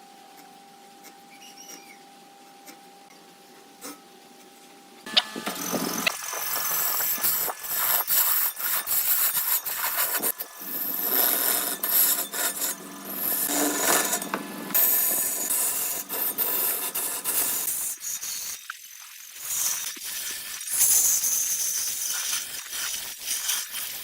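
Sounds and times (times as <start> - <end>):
lathe tool scraping wood: 5.1 - 18.5.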